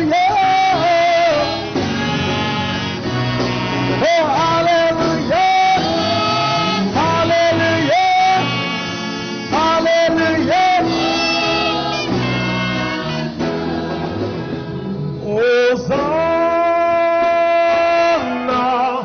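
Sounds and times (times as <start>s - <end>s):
person singing long sliding notes: 0.0s - 14.0s
instrumental accompaniment: 0.0s - 19.0s.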